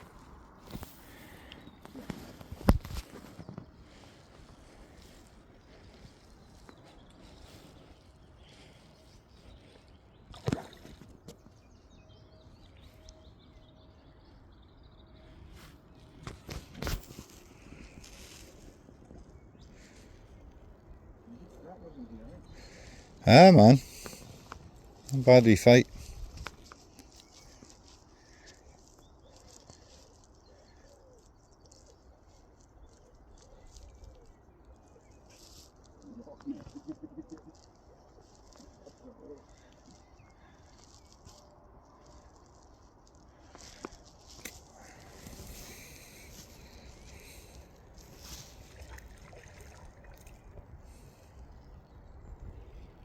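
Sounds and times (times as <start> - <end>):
quiet birdsong: 0.0 - 53.0
bird cooing: 36.0 - 37.8.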